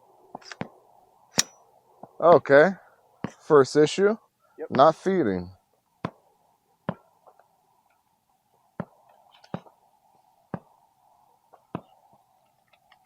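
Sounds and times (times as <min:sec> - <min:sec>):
faint steady hum: 0:00.0 - 0:13.0
rifle metallic clicks: 0:01.4 - 0:01.6.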